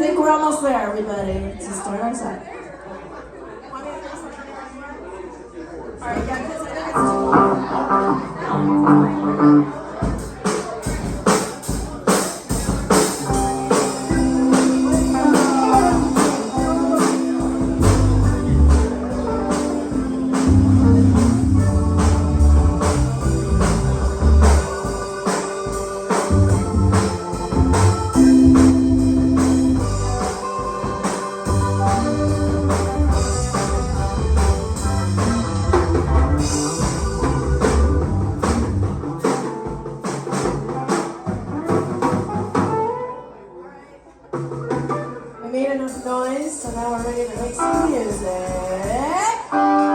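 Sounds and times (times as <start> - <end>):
organ-like keyboard chords: 6.9 - 10.0, 13.0 - 43.4
low bass line: 7.0 - 9.8, 14.1 - 24.9, 26.3 - 39.1
drum kit beat: 7.0 - 43.1, 44.4 - 49.5.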